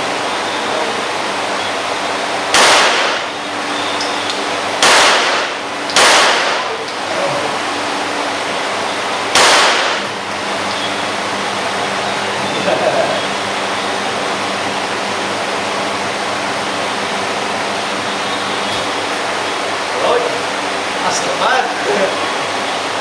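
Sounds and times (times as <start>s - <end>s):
pistol shots: 2.5s - 3.4s, 4.8s - 6.8s, 9.3s - 10.2s.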